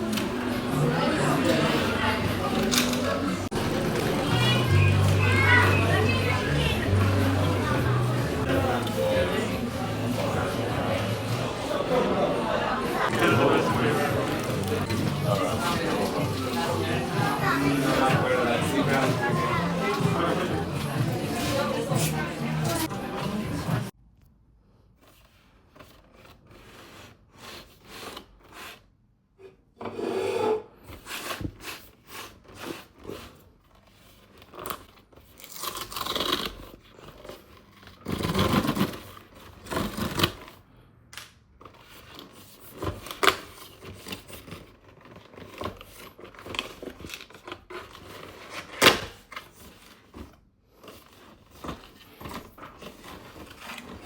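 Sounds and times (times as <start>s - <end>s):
cardboard and plastic tearing: 31.4s - 40.6s, 41.6s - 54.0s.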